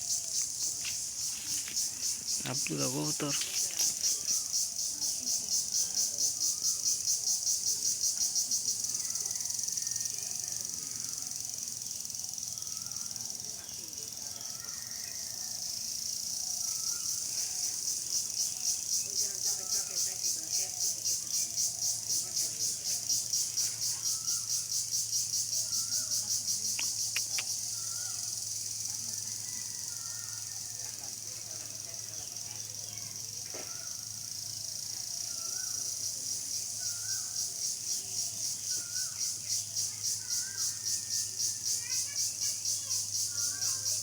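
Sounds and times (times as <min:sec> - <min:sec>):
insect chirping trill: 0:00.0 - 0:44.0
faint bird chirps: 0:25.6 - 0:28.3.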